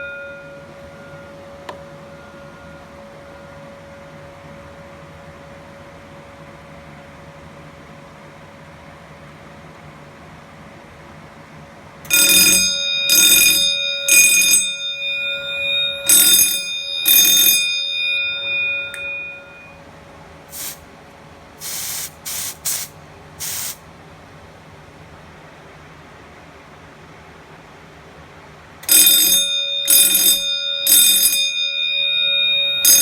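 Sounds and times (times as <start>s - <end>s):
fire alarm strikes ringing: 0.0s - 4.7s, 12.1s - 19.9s, 28.8s - 33.0s
short hissy bursts: 20.5s - 20.8s, 21.6s - 23.8s.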